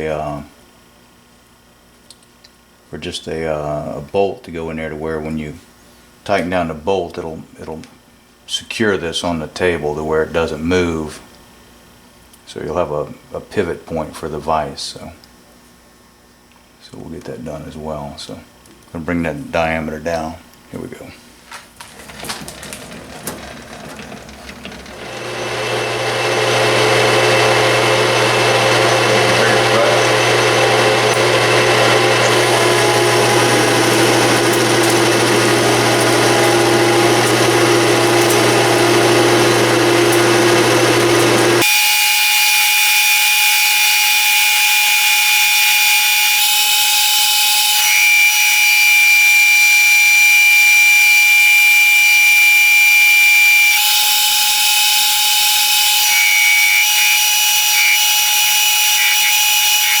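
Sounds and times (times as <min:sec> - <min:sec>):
metal lathe cutting: 0:22.1 - 1:00.0
high-pitched whine: 0:28.9 - 1:00.0.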